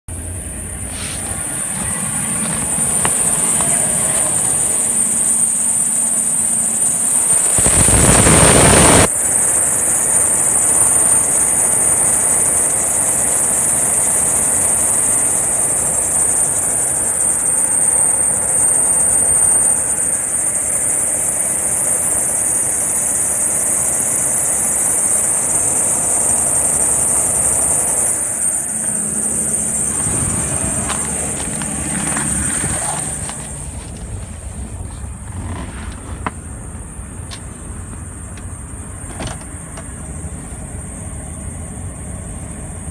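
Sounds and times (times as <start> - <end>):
engine running: 0.0 - 42.9
loud rush of noise: 0.1 - 11.3, 25.9 - 33.9.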